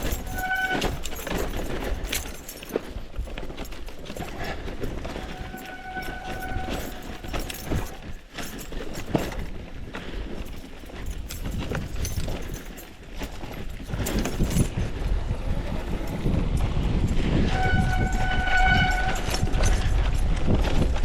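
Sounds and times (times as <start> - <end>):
bike frame and chain rattling: 0.0 - 21.0
wind and tyres rumbling: 0.0 - 21.0.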